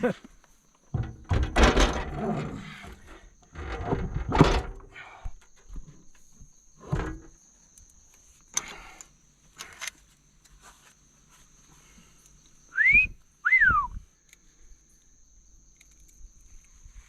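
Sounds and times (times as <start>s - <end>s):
metal knocks and clunks: 0.9s - 5.0s, 6.8s - 7.4s.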